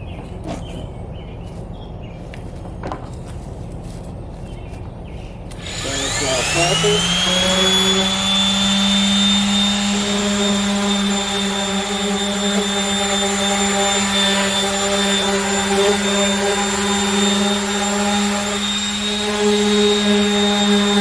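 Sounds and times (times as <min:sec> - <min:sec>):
power sander running: 0:05.5 - 0:21.0.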